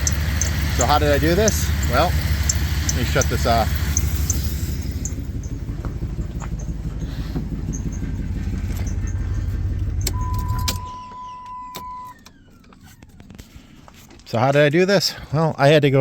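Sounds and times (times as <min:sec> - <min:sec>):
truck engine idling: 0:00.0 - 0:14.4
steady electronic beep: 0:01.8 - 0:06.9, 0:07.6 - 0:12.2.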